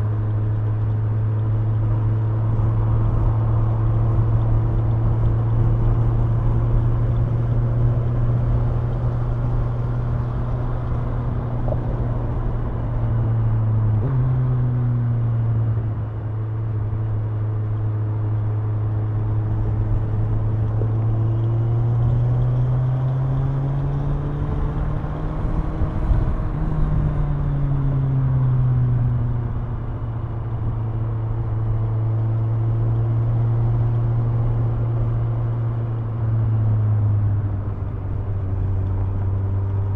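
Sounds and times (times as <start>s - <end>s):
motorcycle engine and exhaust: 0.0s - 39.9s.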